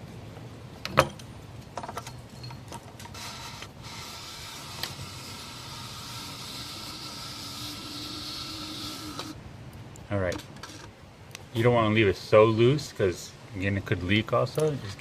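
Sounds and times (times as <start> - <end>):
steady hiss: 0.0 - 15.0.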